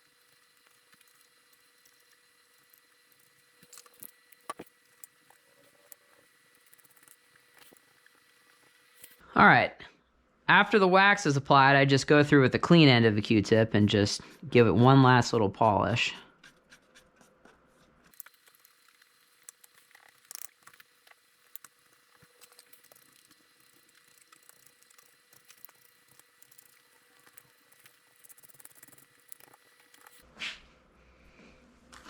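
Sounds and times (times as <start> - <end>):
cotton swab scratching: 15.6 - 18.8, 19.6 - 30.2.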